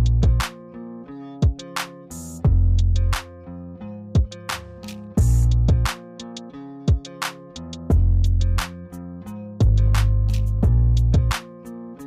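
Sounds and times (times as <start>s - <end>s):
heavy bass notes: 0.0s - 0.5s, 2.2s - 3.2s, 4.2s - 5.9s, 7.9s - 8.8s, 9.6s - 11.4s
plucked guitar notes: 0.0s - 12.0s.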